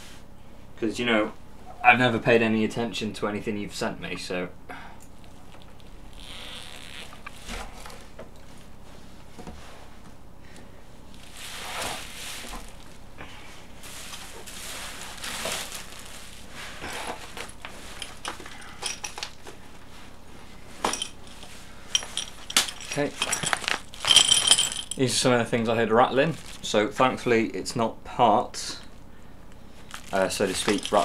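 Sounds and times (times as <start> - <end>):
packaging rustling: 11.1 - 13.1, 13.8 - 19.9, 20.8 - 25.0, 26.1 - 26.7, 29.8 - 31.0.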